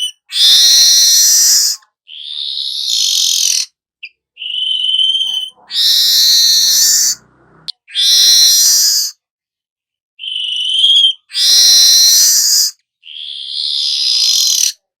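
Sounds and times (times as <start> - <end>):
bird harsh hissing calls: 0.3 - 3.7, 5.0 - 9.2, 11.3 - 14.8.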